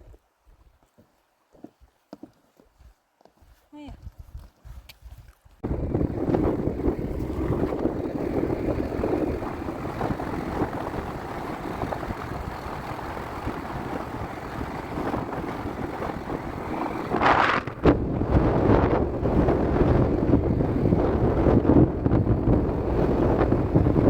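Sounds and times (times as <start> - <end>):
wind on microphone: 3.9 - 24.0
vehicle running: 5.6 - 24.0.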